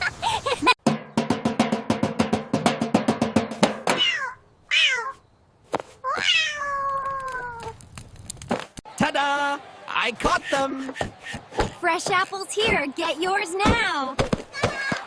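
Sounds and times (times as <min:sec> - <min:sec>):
rapid drum beats: 0:00.8 - 0:04.1, 0:10.1 - 0:15.0
cartoon cat meowing: 0:03.9 - 0:05.2, 0:06.0 - 0:07.8.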